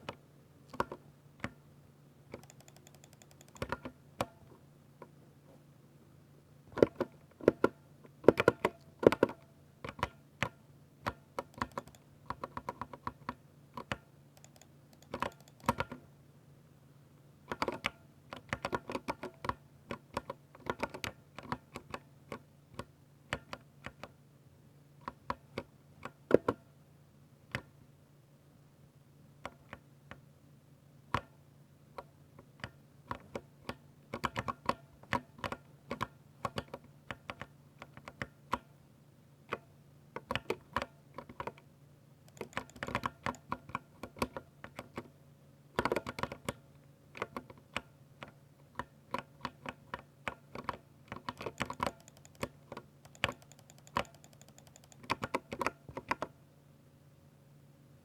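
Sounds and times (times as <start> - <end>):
mechanical keyboard typing: 2.3 - 4.0, 11.1 - 16.0, 42.3 - 45.0, 50.6 - 56.3.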